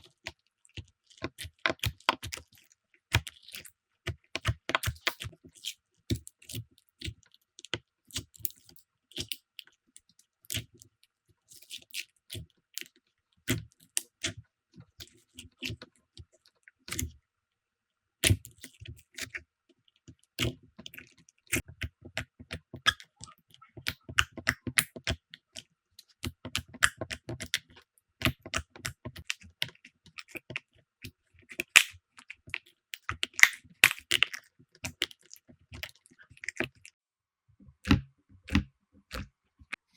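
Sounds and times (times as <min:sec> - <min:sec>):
slime sticky clicks and crackles: 0:26.2 - 0:36.9.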